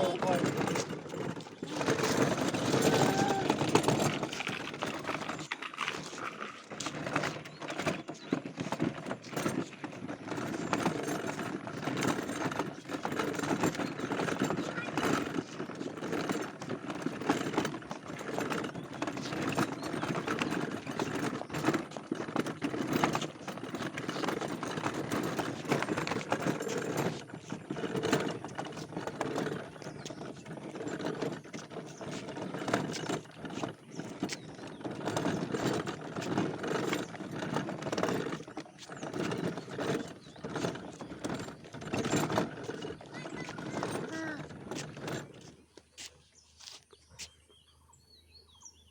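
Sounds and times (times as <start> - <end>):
toy car wheels rattling: 0.0 - 45.7.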